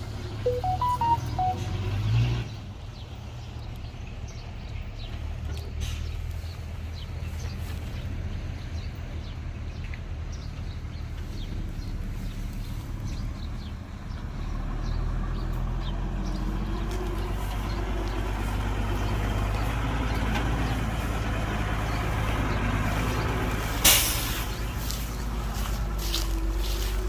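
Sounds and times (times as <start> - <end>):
heavy diesel engine running: 11.2 - 27.0.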